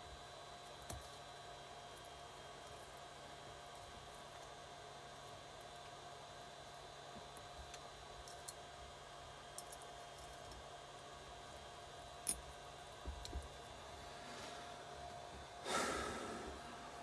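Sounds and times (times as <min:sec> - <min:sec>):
electrical hum: 0:13.1 - 0:17.0.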